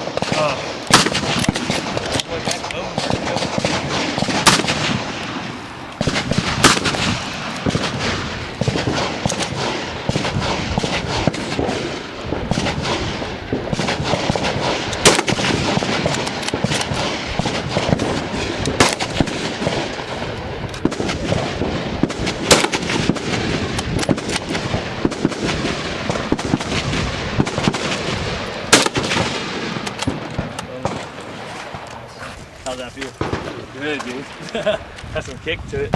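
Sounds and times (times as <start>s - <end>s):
crackle of gunshots: 0.0s - 32.0s, 33.1s - 34.2s
loud single rifle shots: 0.0s - 32.1s, 33.2s - 34.2s.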